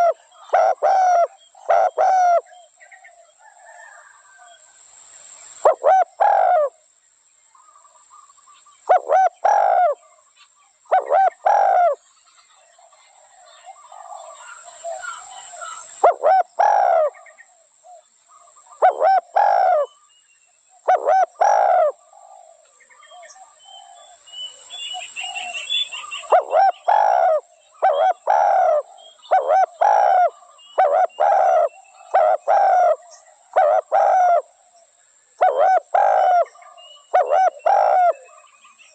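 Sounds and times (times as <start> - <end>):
dove cooing: 0.0 - 2.7, 5.6 - 6.8, 8.9 - 10.2, 10.9 - 12.0, 13.0 - 20.0, 20.8 - 24.2, 24.9 - 34.8, 35.4 - 38.5
small birds chirping: 7.5 - 38.9.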